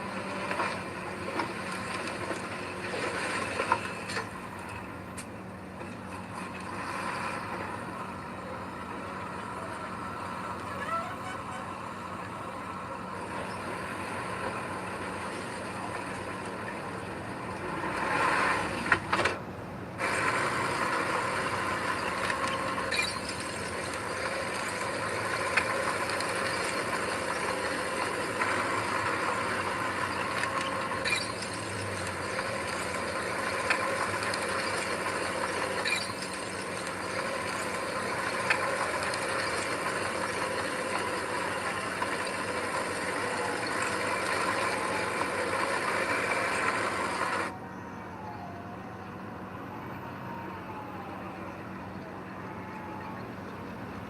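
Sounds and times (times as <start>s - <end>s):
heavy machinery running: 0.0s - 48.2s.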